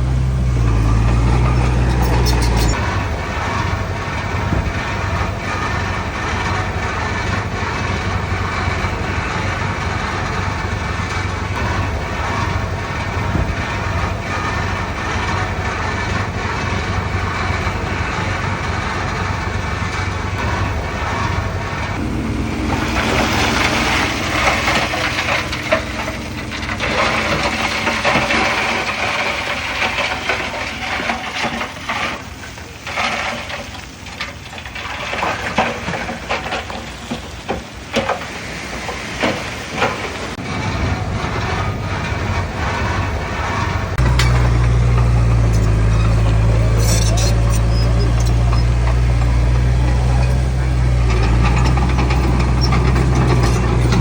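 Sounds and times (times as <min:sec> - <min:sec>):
diesel engine running: 0:00.0 - 0:54.0
metal clanks and knocks: 0:00.0 - 0:54.0
rush of noise: 0:20.5 - 0:28.2.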